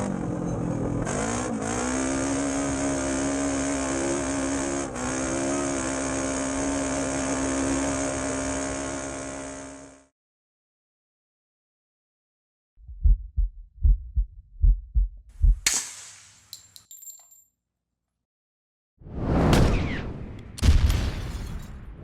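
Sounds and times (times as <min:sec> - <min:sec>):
low heartbeat thumps: 0:12.8 - 0:15.7.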